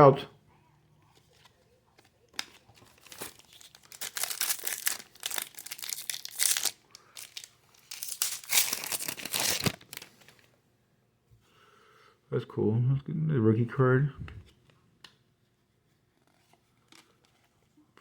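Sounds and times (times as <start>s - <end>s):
foil wrapper tearing and crinkling: 2.3s - 10.3s.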